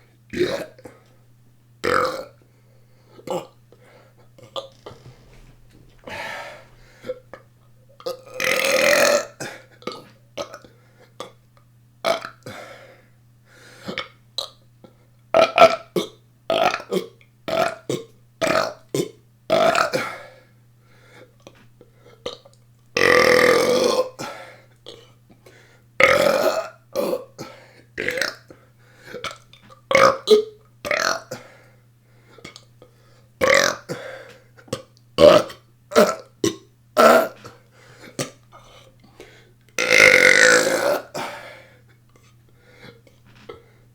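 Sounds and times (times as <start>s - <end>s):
person burping: 39.8s - 41.3s.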